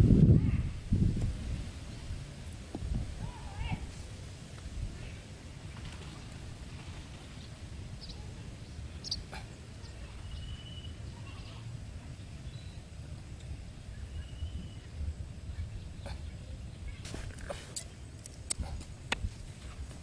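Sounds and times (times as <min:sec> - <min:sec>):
steady low rumble: 0:00.0 - 0:20.0
high bird calls and chirps: 0:07.2 - 0:17.2.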